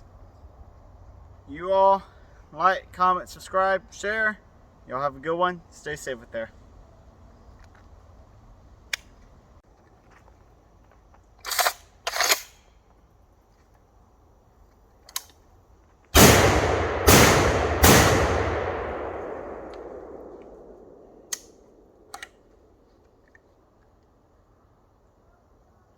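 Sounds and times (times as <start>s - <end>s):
gunshots with rolling echo: 16.2s - 22.2s
sharp cracks: 16.2s - 23.2s.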